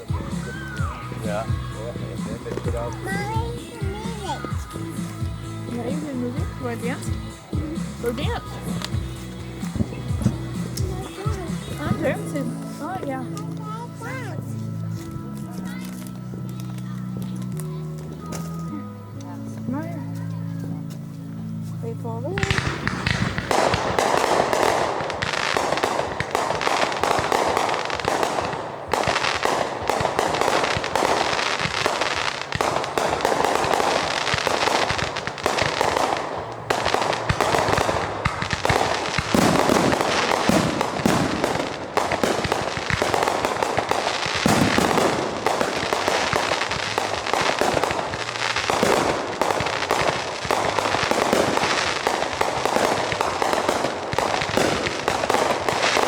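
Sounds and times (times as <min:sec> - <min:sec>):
fireworks banging and crackling: 0:00.0 - 0:56.0.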